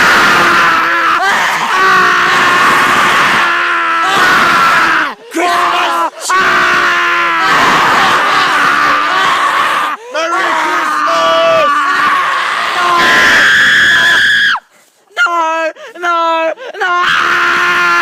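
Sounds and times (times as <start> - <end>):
person screaming: 0.0 - 14.6, 15.2 - 18.0
person gasping for breath: 10.0 - 10.2, 15.8 - 16.0.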